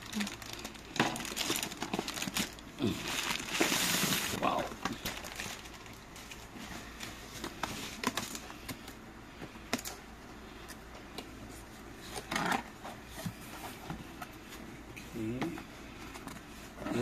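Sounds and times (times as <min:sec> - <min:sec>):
packaging rustling: 0:00.0 - 0:08.5.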